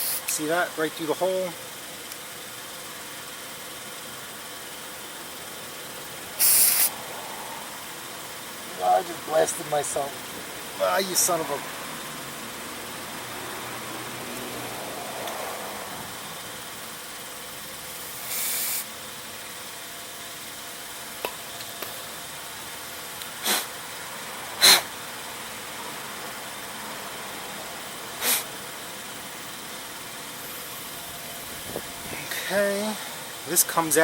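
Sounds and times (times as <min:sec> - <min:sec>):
hissing spray blasts: 0:00.0 - 0:00.3, 0:06.4 - 0:07.0, 0:18.2 - 0:18.9, 0:28.2 - 0:28.5.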